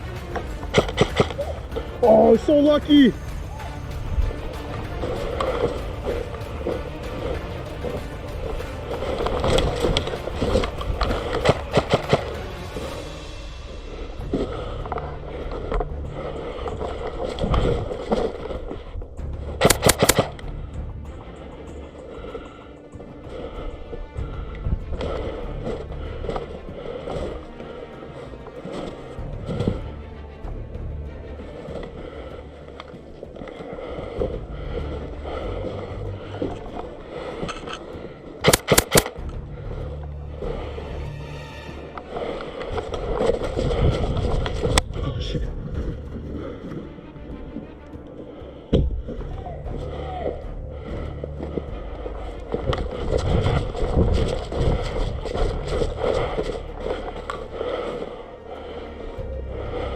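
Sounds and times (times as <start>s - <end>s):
airsoft gun firing shots: 19.6s - 20.3s, 38.4s - 39.1s.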